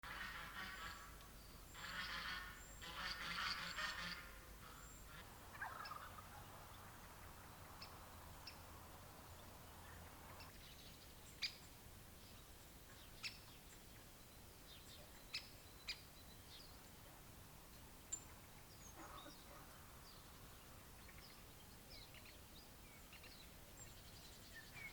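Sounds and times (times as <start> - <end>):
faint outdoor background: 0.0 - 24.9
turkey gobbling: 5.5 - 6.3.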